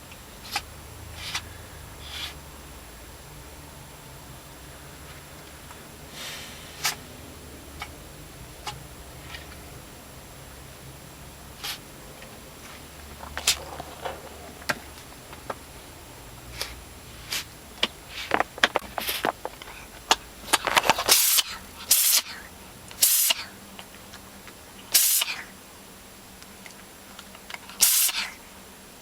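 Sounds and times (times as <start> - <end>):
cat sneezing: 21.1 - 23.6, 24.9 - 25.4, 27.8 - 28.3.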